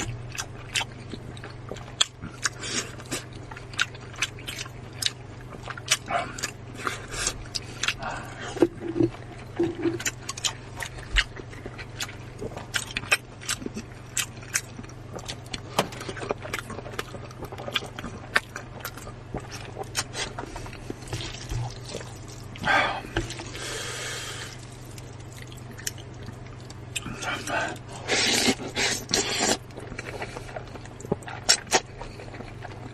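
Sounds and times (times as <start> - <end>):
wet mouth clicks and chewing: 24.6 - 32.9.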